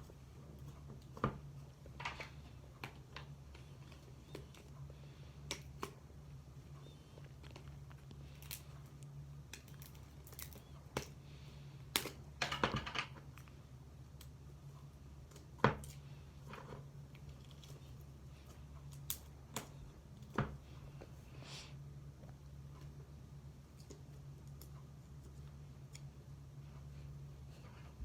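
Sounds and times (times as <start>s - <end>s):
steady low hum: 0.0s - 28.0s.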